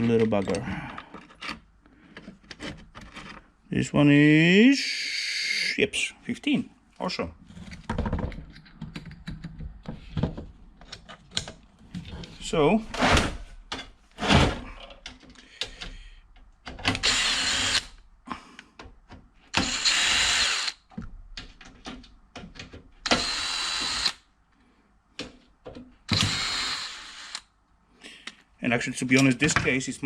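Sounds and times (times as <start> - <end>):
cordless drill spinning: 17.0 - 17.9, 19.6 - 20.8, 23.0 - 24.2, 26.1 - 27.4.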